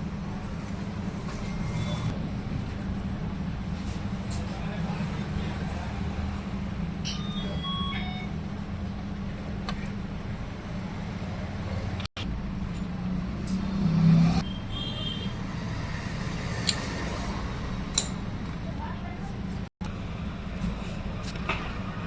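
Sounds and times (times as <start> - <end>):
street traffic hum: 0.0 - 22.0
short electronic beeps: 7.0 - 8.4
vehicle passing: 13.0 - 14.4.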